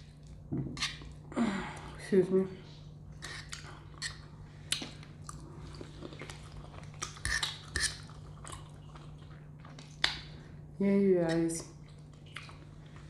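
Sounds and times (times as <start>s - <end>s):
chewing and mouth smacks: 3.2s - 10.4s, 11.2s - 13.0s.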